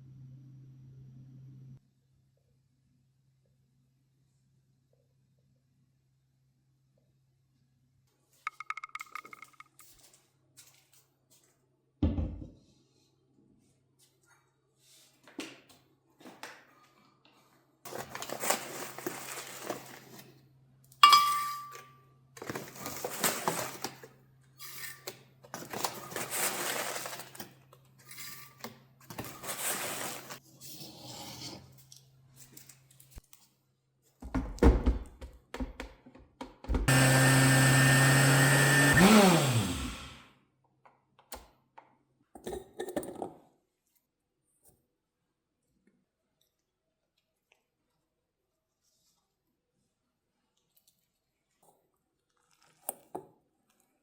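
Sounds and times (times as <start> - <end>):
rustling and handling noise: 13.6 - 20.4, 21.0 - 24.2, 25.0 - 30.5
electric motor winding down: 36.9 - 40.2.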